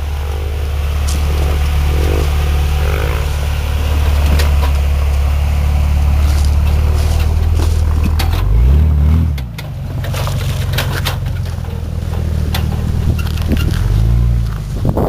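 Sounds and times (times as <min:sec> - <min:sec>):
car engine droning: 0:00.0 - 0:15.0
sharp clicks and knocks: 0:04.0 - 0:05.3, 0:06.4 - 0:08.6, 0:09.3 - 0:14.7.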